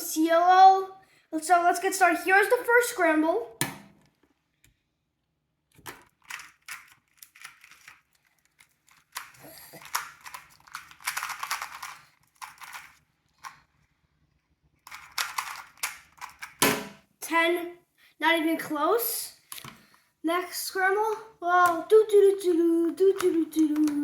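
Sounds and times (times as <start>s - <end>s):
plastic puzzle cube clicking: 8.6s - 13.6s, 14.9s - 16.6s, 23.0s - 24.0s.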